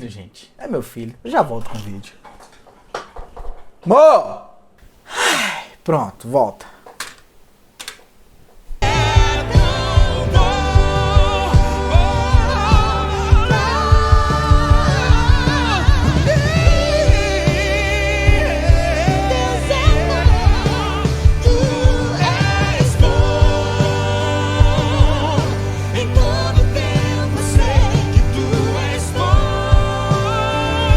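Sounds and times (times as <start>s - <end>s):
band accompaniment with bass: 8.8s - 30.9s
solo voice singing with vibrato: 8.8s - 30.9s.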